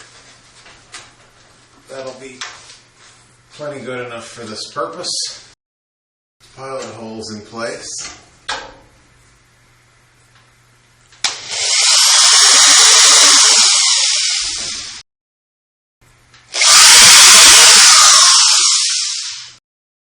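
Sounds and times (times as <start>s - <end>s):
power drill running: 11.2s - 15.0s, 16.5s - 19.6s.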